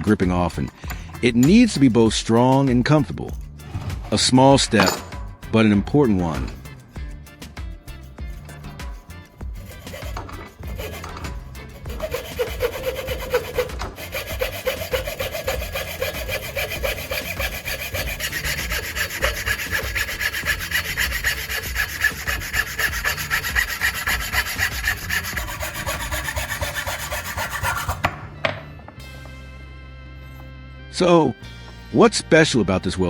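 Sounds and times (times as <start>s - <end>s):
saw cutting wood: 9.4s - 28.4s.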